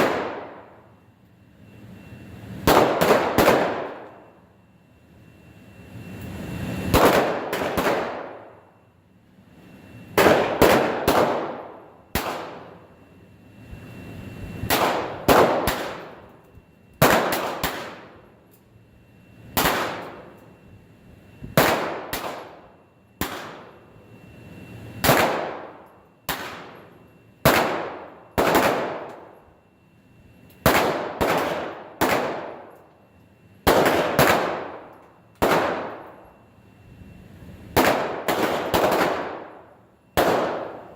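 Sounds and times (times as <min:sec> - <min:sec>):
pistol shots echoing: 0:00.0 - 0:00.7, 0:02.7 - 0:04.1, 0:06.9 - 0:08.5, 0:10.2 - 0:12.6, 0:14.7 - 0:16.1, 0:17.0 - 0:18.1, 0:21.6 - 0:22.6, 0:27.4 - 0:29.3, 0:30.6 - 0:32.7, 0:33.7 - 0:36.2, 0:37.8 - 0:39.6, 0:40.2 - 0:40.9.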